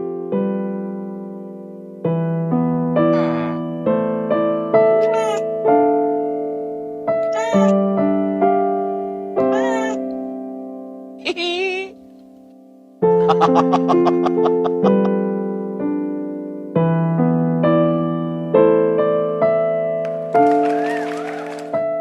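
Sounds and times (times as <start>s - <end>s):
slow electric piano melody: 0.0s - 11.2s, 12.0s - 20.9s
cat meows: 5.0s - 5.5s, 7.3s - 7.8s, 9.5s - 10.0s.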